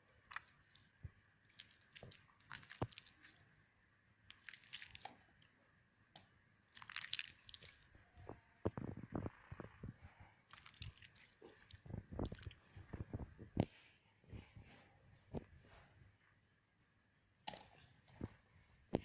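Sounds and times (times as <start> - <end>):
slime squelching crackles: 0.0 - 3.6, 4.2 - 5.6, 6.7 - 9.8, 10.4 - 13.2.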